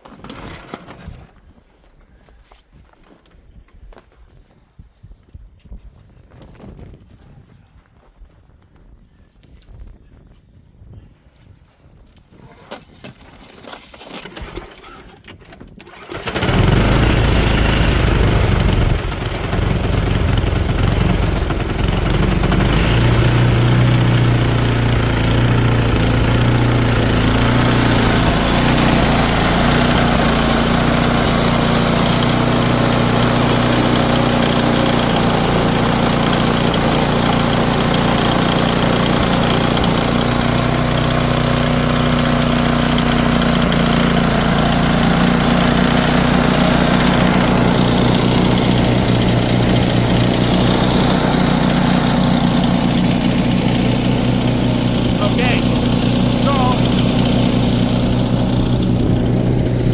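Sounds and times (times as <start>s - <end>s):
small gasoline engine running: 14.2s - 59.9s.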